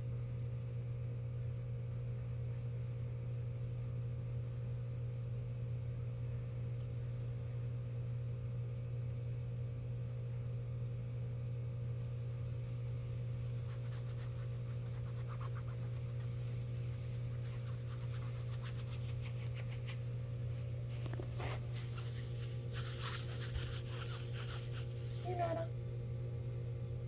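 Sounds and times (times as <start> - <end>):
steady low hum: 10.8 - 27.0
faint scratching and rubbing: 12.0 - 25.7.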